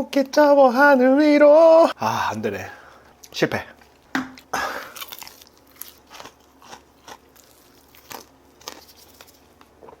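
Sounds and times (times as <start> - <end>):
crunchy chewing: 3.2 - 10.0.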